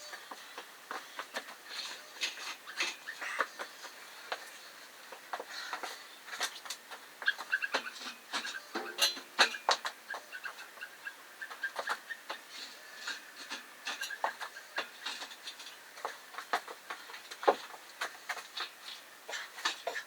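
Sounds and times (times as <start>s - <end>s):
caster wheels squeaking and clicking: 6.5s - 13.2s, 13.9s - 15.8s.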